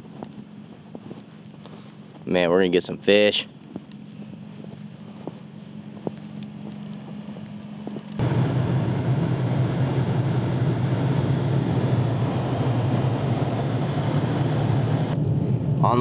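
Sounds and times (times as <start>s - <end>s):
road and wind noise: 0.0s - 16.0s
low engine drone: 4.0s - 16.0s.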